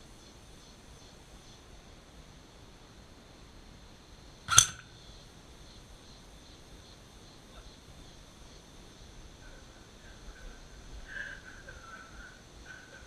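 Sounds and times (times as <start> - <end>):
airsoft gun shot: 4.5 - 5.0.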